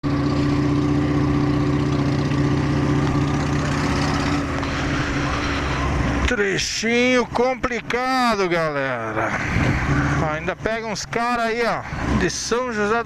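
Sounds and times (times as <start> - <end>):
motorcycle engine running: 0.0 - 6.3.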